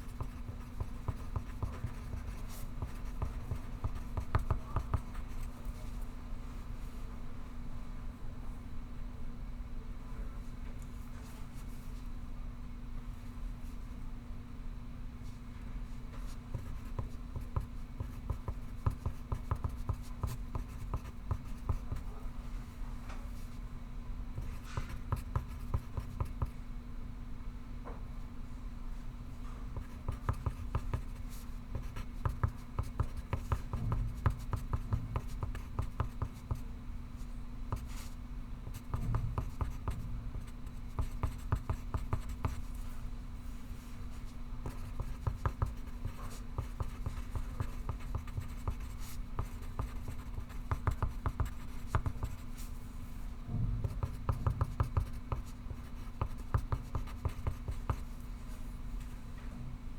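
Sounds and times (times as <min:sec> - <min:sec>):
pencil writing on paper: 0:00.0 - 0:05.4, 0:16.6 - 0:22.1, 0:24.4 - 0:26.5, 0:29.8 - 0:36.6, 0:37.7 - 0:38.1, 0:38.7 - 0:42.7, 0:44.6 - 0:52.6, 0:53.9 - 0:58.1
steady low hum: 0:00.0 - 0:59.9.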